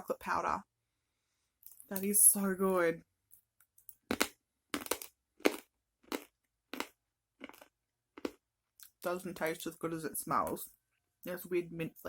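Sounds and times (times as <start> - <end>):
crunching candy stick: 4.0 - 8.4.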